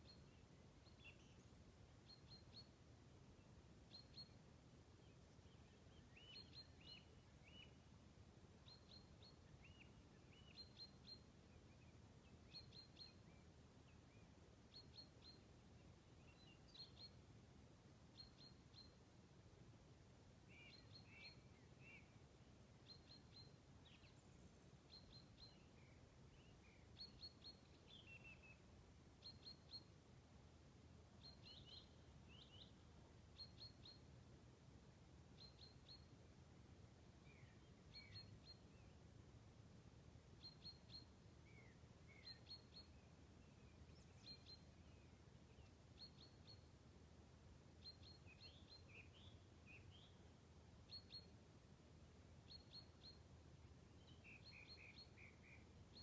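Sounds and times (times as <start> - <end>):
songbirds chirping: 0.0 - 56.0.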